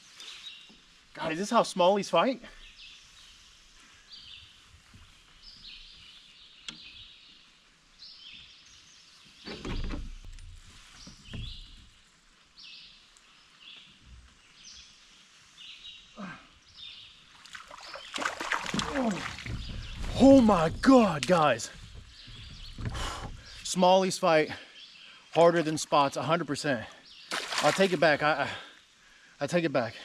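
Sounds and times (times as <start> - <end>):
songbird singing: 0.0 - 30.0
fish splashing in water: 17.4 - 20.2, 27.3 - 28.0.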